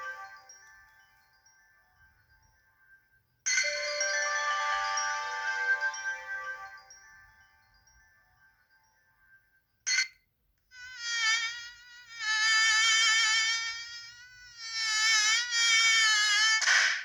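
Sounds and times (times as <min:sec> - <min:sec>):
buzzy synthesized ringtone: 0:03.5 - 0:08.9, 0:10.8 - 0:16.8.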